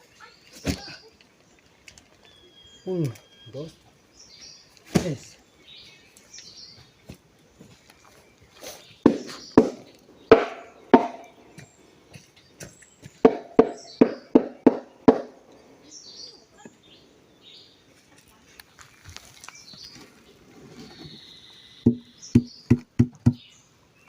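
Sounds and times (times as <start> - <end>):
sharp knocks on molds: 4.9 - 5.2, 9.0 - 11.7, 12.6 - 15.4, 21.8 - 23.4.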